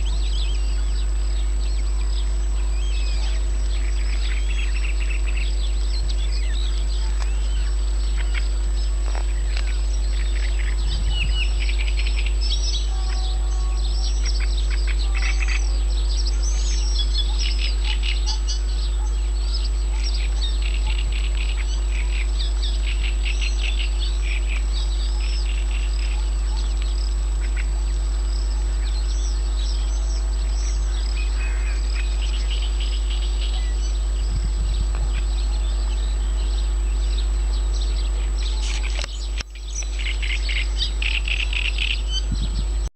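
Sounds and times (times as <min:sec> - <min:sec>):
faint high whine: 0:00.0 - 0:42.9
wild birds calling and singing: 0:00.0 - 0:42.9
low rumble: 0:18.5 - 0:41.1.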